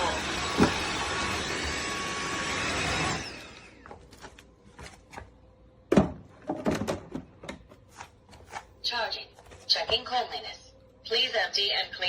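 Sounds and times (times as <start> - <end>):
floor washer motor whining: 0.0 - 5.2.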